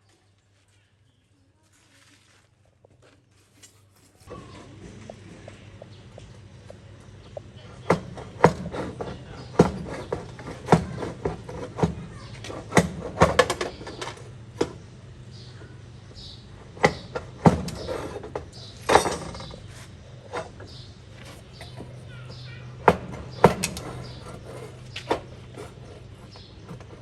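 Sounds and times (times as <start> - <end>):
steady low hum: 2.7 - 27.0
sharp knocks and clanks: 4.2 - 14.8, 16.7 - 19.7, 20.3 - 27.0.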